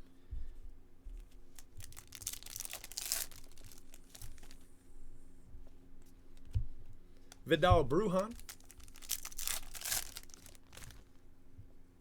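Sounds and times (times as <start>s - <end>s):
foil wrapper tearing: 1.5s - 4.7s, 8.2s - 11.2s
wrapper crinkling: 1.5s - 4.7s, 8.2s - 11.2s
cards being handled: 7.3s - 11.1s.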